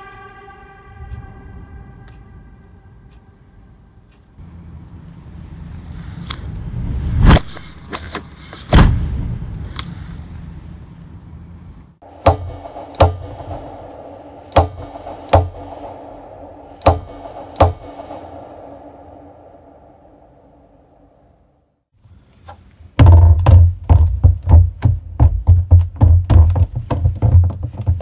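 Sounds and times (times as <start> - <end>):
low rumble: 0.0 - 8.0, 8.8 - 21.8
steady hum: 0.0 - 21.8
heavy hits: 8.7 - 9.7, 12.0 - 21.6
sharp metallic hits: 12.0 - 21.6.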